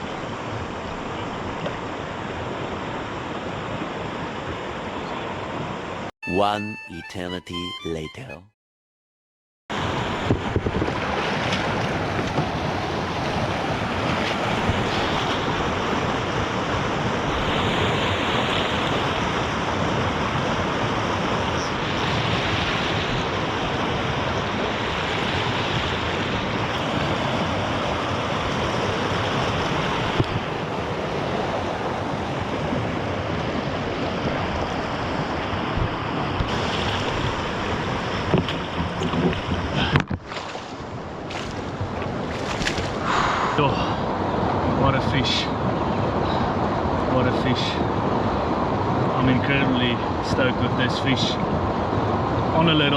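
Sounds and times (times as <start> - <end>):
water moving around a kayak: 9.8 - 43.6
wind on microphone: 40.8 - 44.8.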